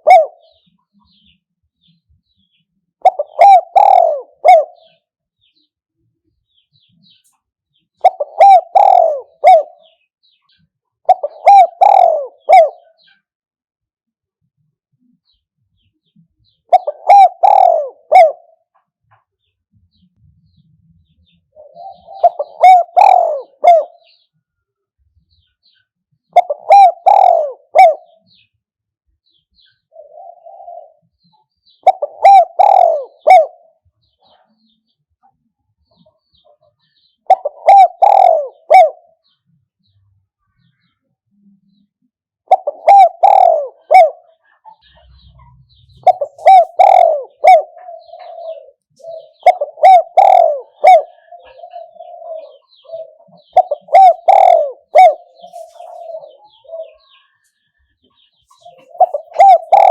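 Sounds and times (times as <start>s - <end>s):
dove cooing: 0.0s - 1.3s, 3.0s - 5.1s, 8.0s - 10.1s, 11.0s - 13.3s, 16.6s - 18.8s, 21.5s - 24.3s, 26.3s - 28.5s, 29.6s - 34.8s, 35.8s - 39.4s, 42.4s - 59.9s.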